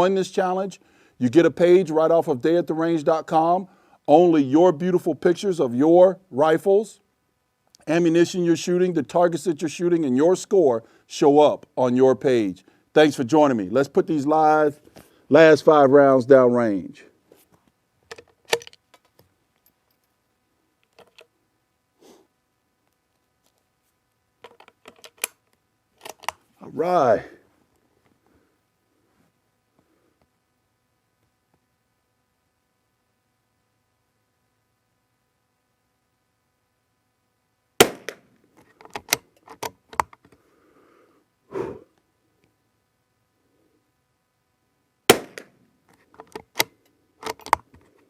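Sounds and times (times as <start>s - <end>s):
soft rustle: 17.2s - 17.8s
rifle mechanical clicks: 24.4s - 25.4s, 37.8s - 40.2s, 45.1s - 47.7s
rifle shot: 37.8s - 38.3s, 45.1s - 45.6s.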